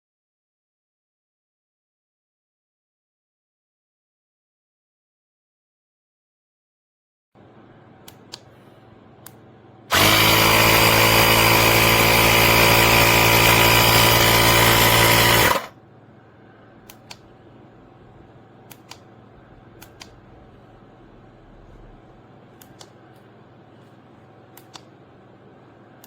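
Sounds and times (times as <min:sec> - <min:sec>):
tire inflator compressor running: 0:09.9 - 0:15.7.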